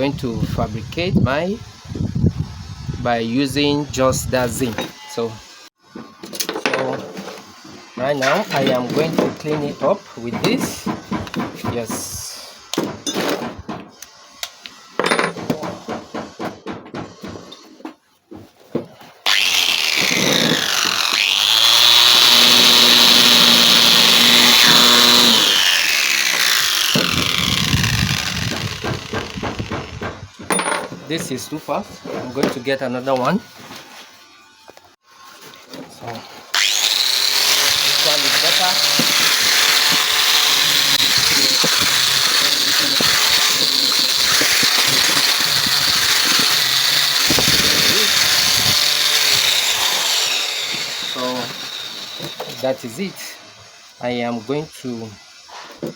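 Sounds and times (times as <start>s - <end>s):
electric power tool whine: 19.3s - 30.5s, 36.4s - 54.0s.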